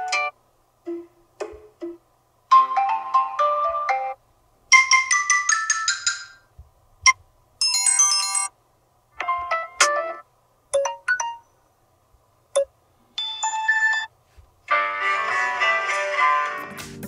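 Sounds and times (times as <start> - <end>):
electronic alarm melodies and chimes: 12.6 - 14.1.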